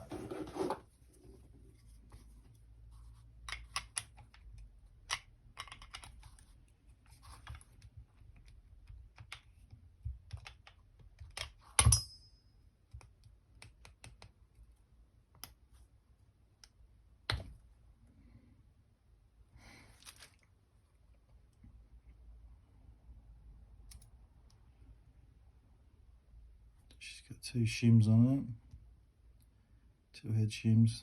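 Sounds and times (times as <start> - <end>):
sharp metallic clink: 11.8 - 12.5.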